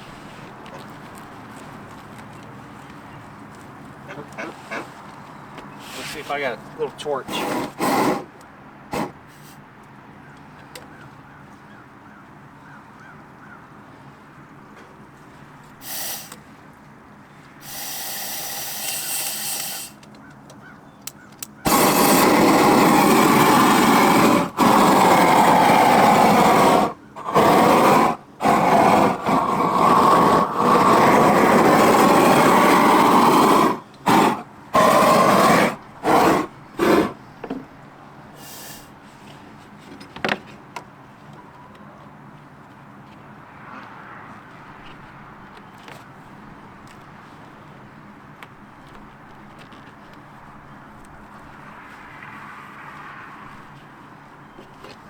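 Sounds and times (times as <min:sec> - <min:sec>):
handheld torch hissing and blasting: 0:05.8 - 0:09.6, 0:15.8 - 0:16.4, 0:17.6 - 0:20.1, 0:21.7 - 0:37.2, 0:38.4 - 0:38.9.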